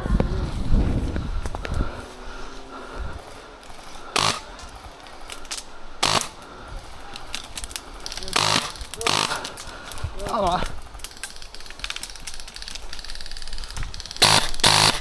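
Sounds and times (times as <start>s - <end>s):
airsoft gun firing bursts: 4.0s - 4.6s, 6.0s - 6.5s, 8.2s - 9.6s, 14.0s - 15.0s.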